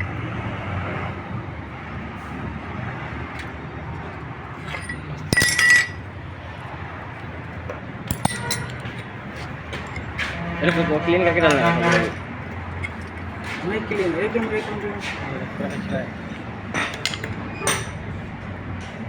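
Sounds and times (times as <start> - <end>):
metal parts clinking: 4.6 - 6.0, 8.1 - 10.1.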